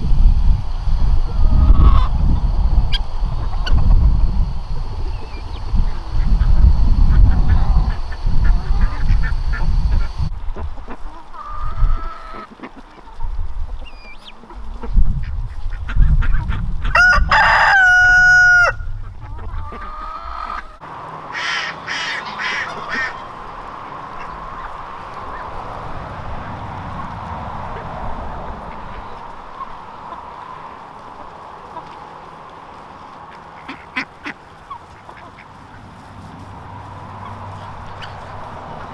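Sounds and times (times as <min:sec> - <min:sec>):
rooster crowing: 0:00.0 - 0:10.3, 0:16.8 - 0:25.9
low rumble: 0:00.0 - 0:10.9, 0:14.7 - 0:20.8
poultry calling: 0:00.0 - 0:38.9.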